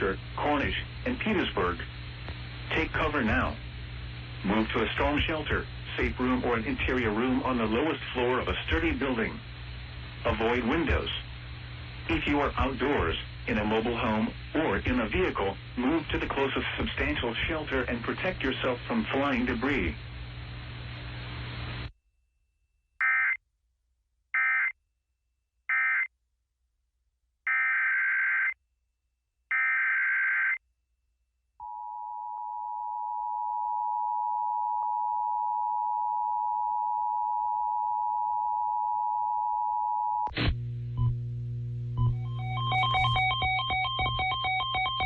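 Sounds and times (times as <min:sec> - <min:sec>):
low hum: 0:00.0 - 0:16.3, 0:40.3 - 0:45.0
two-tone attention signal: 0:42.0 - 0:45.0
warbling digital data bursts: 0:42.2 - 0:45.0.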